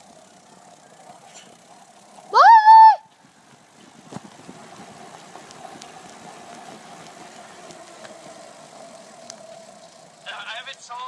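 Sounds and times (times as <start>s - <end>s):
faint engine-like hum: 0.0s - 11.0s
faint ticks: 3.1s - 11.0s.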